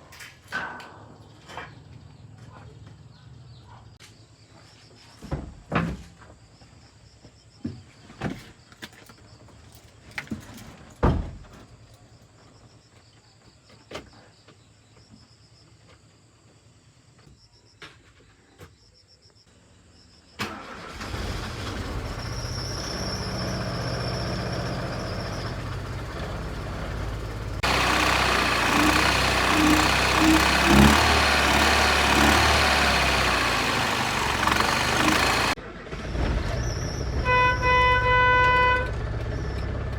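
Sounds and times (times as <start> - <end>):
car engine starting and running: 20.5 - 35.6.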